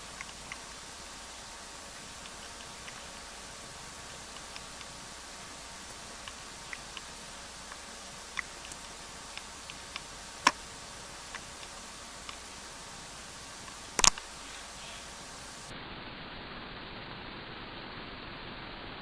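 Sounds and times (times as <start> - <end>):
steady hiss: 0.0 - 19.0
hands clicking and tapping cord: 13.6 - 14.3.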